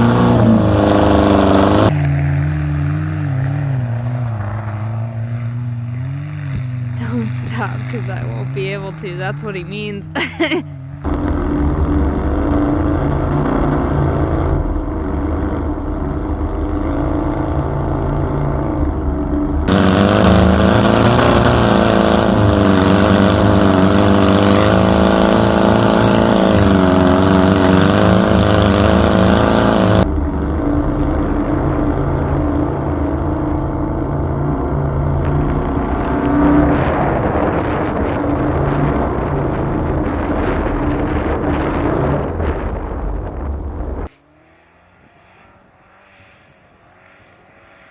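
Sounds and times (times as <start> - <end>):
car engine running under load: 0.0 - 47.9
loud rushing noise: 11.0 - 34.1, 35.0 - 44.1.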